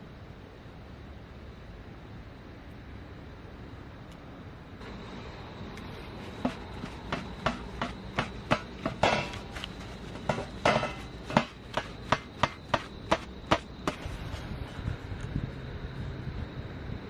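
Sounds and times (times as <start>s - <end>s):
blade chopping wood: 6.4s - 14.1s.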